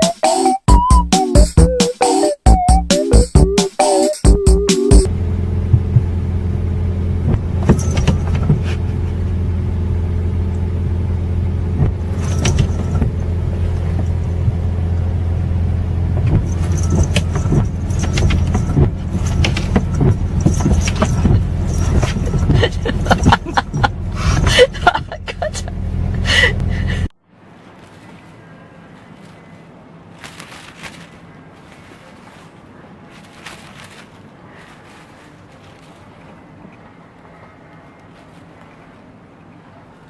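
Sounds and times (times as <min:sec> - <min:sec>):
vehicle engine humming: 0:00.0 - 0:40.0
clicks and knocks: 0:07.3 - 0:08.8, 0:16.2 - 0:23.9.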